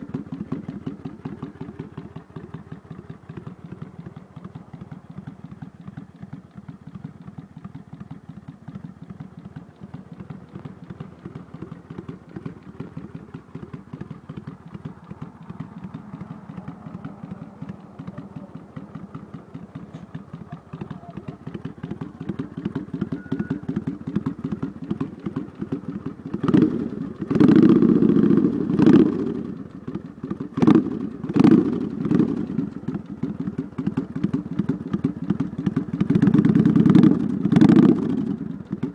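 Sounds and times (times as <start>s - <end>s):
motorcycle engine idling and revving: 0.0s - 38.9s.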